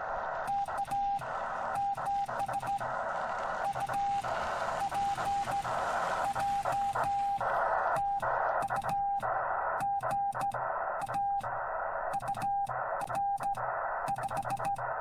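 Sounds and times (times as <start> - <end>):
radio band hiss: 0.0 - 15.0
morse code beeps: 0.5 - 2.9, 3.6 - 4.1, 6.3 - 11.5, 12.1 - 14.8.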